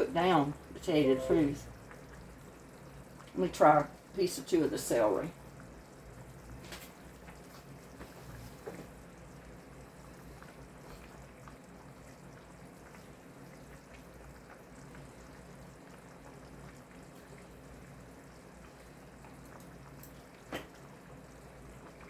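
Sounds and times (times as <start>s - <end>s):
soup bubbling in a pot: 0.0s - 22.0s.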